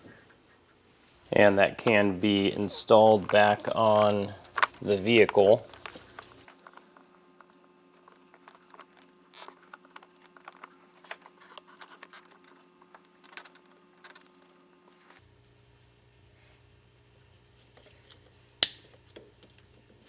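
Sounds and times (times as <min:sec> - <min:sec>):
faint steady hum: 0:00.0 - 0:20.0
plastic parts clicking: 0:01.9 - 0:07.1, 0:08.0 - 0:14.7.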